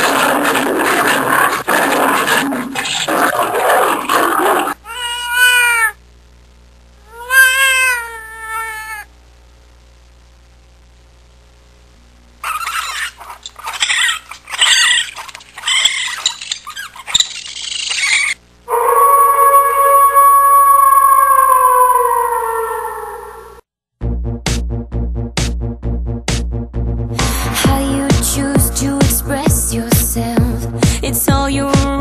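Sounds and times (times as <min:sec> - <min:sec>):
harsh high-pitched animal calls: 0:00.0 - 0:06.0, 0:07.0 - 0:09.1, 0:12.4 - 0:23.6
noisy sound: 0:00.0 - 0:07.9
cat meowing: 0:04.9 - 0:06.0, 0:07.1 - 0:09.1.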